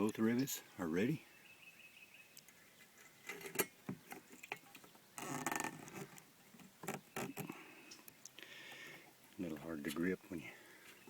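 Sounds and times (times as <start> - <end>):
scraping rustle: 2.8 - 7.7.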